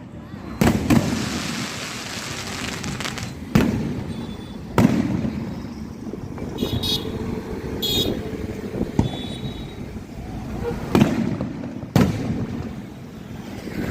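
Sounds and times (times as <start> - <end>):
firework shells bursting: 0.6 - 4.2.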